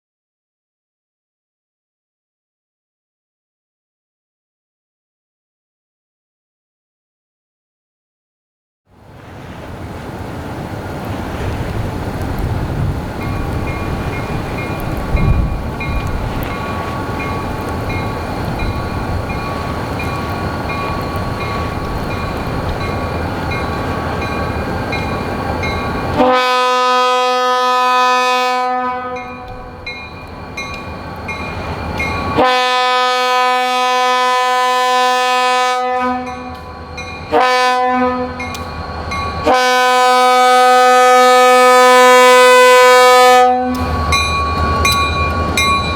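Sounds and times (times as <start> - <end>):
train and wind noise: 8.9 - 45.9
locomotive bell ringing: 13.2 - 27.5, 29.0 - 33.6, 36.0 - 41.6, 43.8 - 45.9
locomotive air horn blasts: 26.1 - 29.8, 32.3 - 36.7, 37.3 - 38.6, 39.4 - 44.0.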